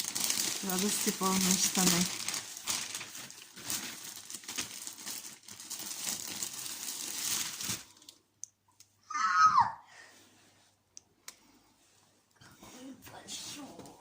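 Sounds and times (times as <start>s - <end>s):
packaging crinkling and tearing: 0.0s - 8.2s.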